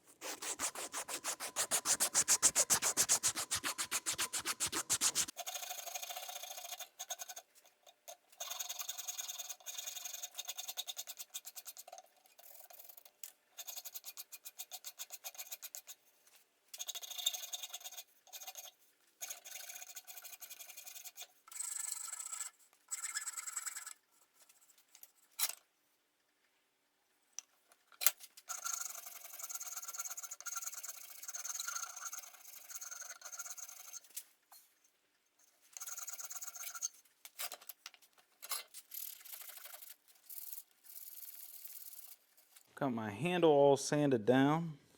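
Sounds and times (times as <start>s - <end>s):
hand rasp scraping wood: 0.0s - 5.3s.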